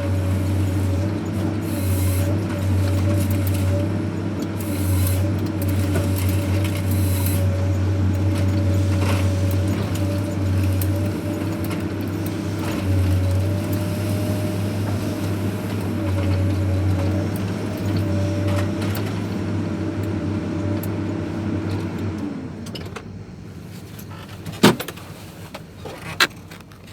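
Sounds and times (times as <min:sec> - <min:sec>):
heavy diesel engine droning: 0:00.0 - 0:24.3.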